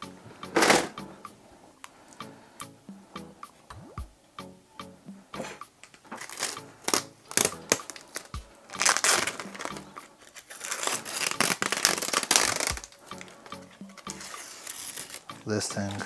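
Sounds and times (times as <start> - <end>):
packaging crinkling and tearing: 5.9 - 16.0.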